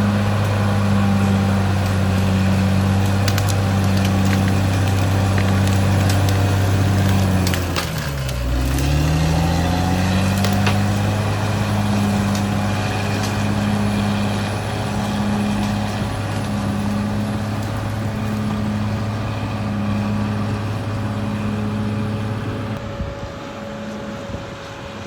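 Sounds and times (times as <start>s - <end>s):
bulldozer engine lugging: 0.0s - 25.0s
sharp cracks and clatter: 2.8s - 11.2s.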